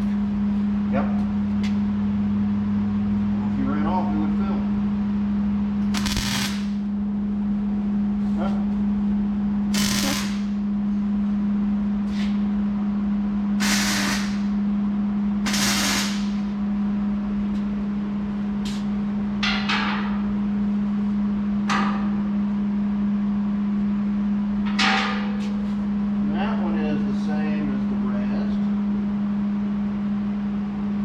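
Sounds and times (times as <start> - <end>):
low hum: 0.0 - 31.0
welder crackling hiss: 6.0 - 6.8, 9.7 - 10.6, 13.6 - 14.5, 15.5 - 16.4.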